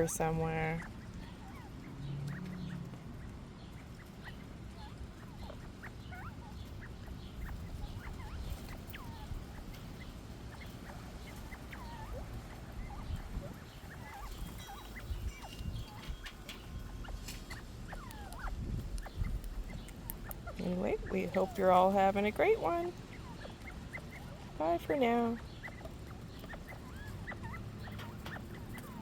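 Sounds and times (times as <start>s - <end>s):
young quail peeping: 0.0s - 29.0s
wind rumble on microphone: 6.0s - 23.9s.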